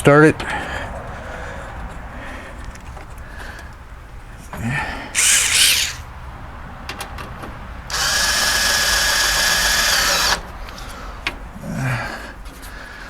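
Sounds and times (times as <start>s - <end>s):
power drill driving a screw: 5.2s - 6.0s, 7.9s - 10.4s.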